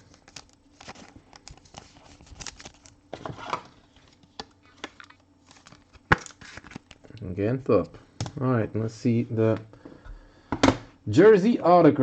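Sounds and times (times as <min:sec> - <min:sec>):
cards and plastic packaging handled: 0:00.0 - 0:07.1.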